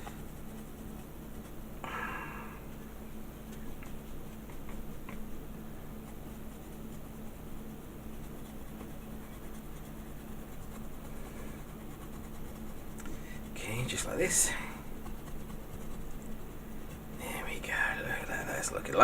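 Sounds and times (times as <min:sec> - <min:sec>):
paintbrush scratching rough surface: 0:00.0 - 0:01.6, 0:06.0 - 0:18.7
steady low hum: 0:00.0 - 0:19.0.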